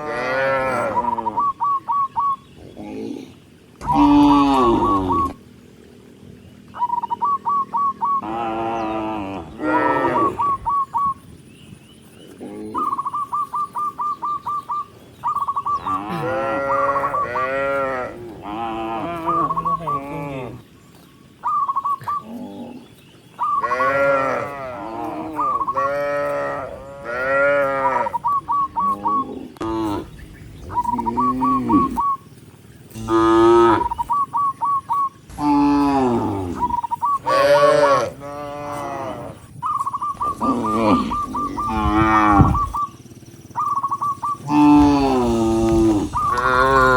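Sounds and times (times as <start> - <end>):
cattle mooing: 0.0 - 1.4, 3.8 - 5.4, 8.2 - 10.6, 15.8 - 20.6, 23.5 - 32.2, 32.9 - 34.2, 35.3 - 39.5, 40.2 - 42.8, 44.4 - 46.9.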